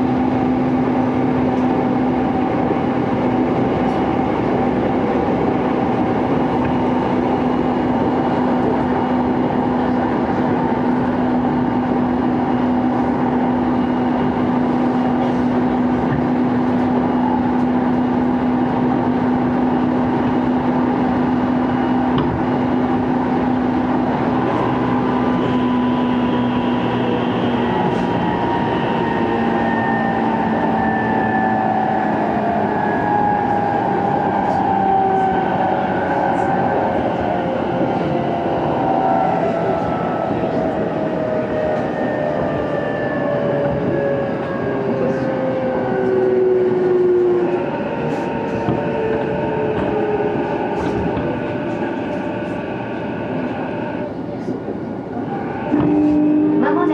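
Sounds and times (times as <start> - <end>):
train rail running noise: 0.0 - 56.9
electric train motor whine: 15.7 - 56.9.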